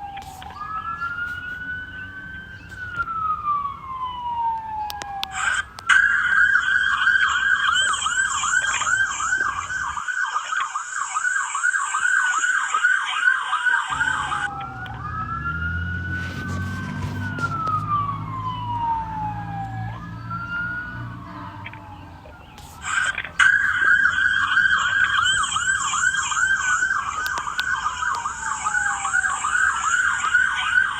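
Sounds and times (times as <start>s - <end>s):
police siren yelp and wail: 0.0s - 30.9s.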